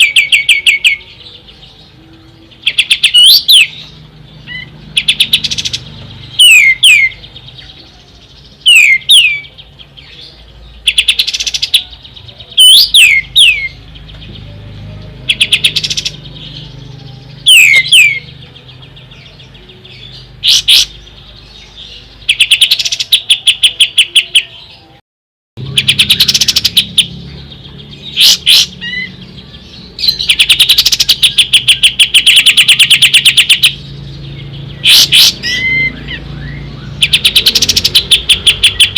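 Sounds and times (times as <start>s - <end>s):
bird fast rattling trills: 4.6s - 7.2s, 30.0s - 33.8s, 36.9s - 38.9s
bird whistles sweeping downward: 17.4s - 18.2s.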